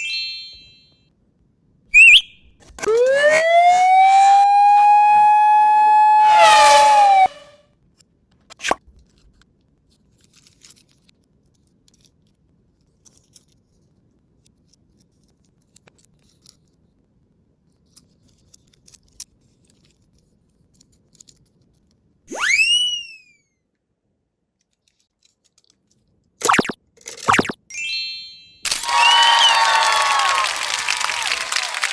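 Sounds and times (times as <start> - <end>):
rising and falling whistle effect: 0.0 - 0.7, 2.0 - 7.6, 22.3 - 23.4, 26.4 - 30.9
downward-sweeping cartoon effect: 2.0 - 7.6, 22.3 - 23.3, 26.4 - 29.4.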